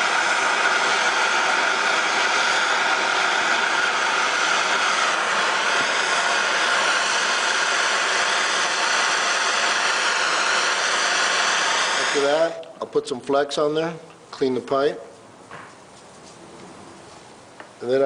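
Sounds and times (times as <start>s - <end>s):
gas torch hissing: 0.0s - 12.9s.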